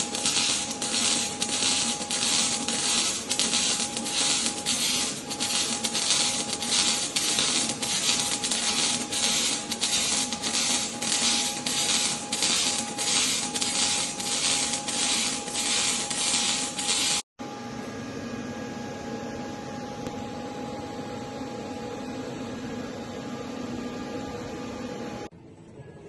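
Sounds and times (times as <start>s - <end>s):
arc welding crackling hiss: 0.0s - 17.2s
machine hum: 0.0s - 26.0s.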